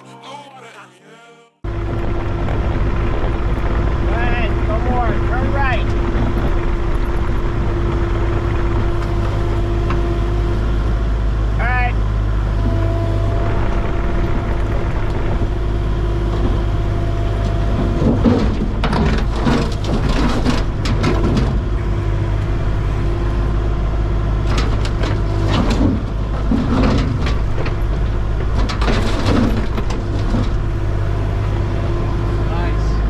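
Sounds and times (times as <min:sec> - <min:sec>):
engine humming: 0:01.6 - 0:33.0
clanks and rattles: 0:13.6 - 0:23.6, 0:24.4 - 0:32.0.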